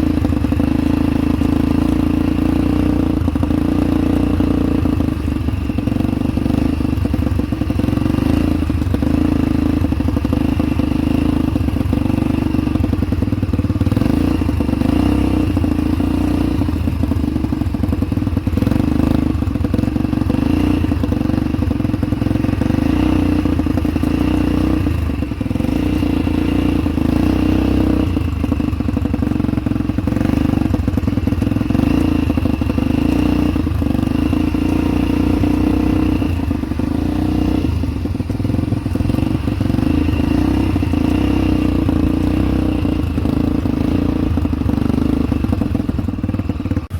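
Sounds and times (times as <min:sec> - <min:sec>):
atv engine running: 0:00.0 - 0:46.9.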